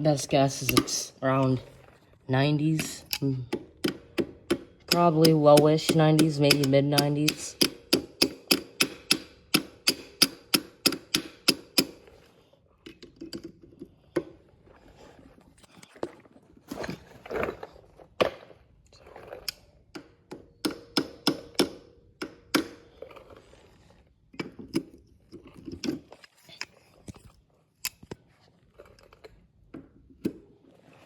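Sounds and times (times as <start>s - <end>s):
knocks and scraping: 0.0s - 20.5s
sharp metal clicks: 0.1s - 1.6s, 2.6s - 12.0s.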